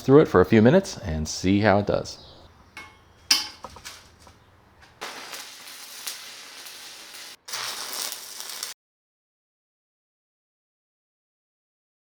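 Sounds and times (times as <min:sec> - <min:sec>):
welding arc crackling and hissing: 0:04.0 - 0:08.8.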